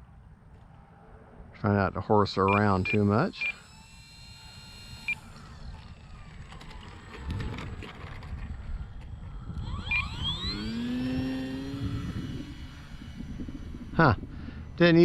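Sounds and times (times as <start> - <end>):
model plane motor whine: 2.4 - 15.0
wind rumbling on microphone: 4.6 - 15.0.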